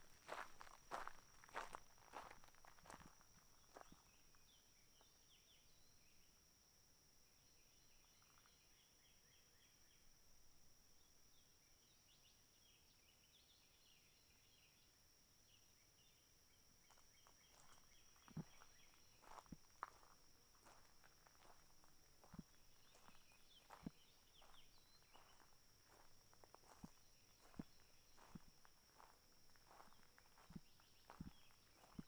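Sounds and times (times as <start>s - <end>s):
footsteps: 0.0s - 4.0s, 17.6s - 32.0s
small birds twittering: 22.8s - 28.4s, 29.0s - 32.0s.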